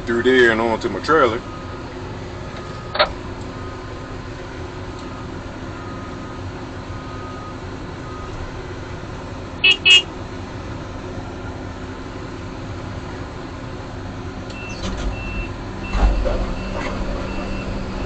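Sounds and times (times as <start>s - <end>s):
diesel engine idling: 0.0s - 18.0s.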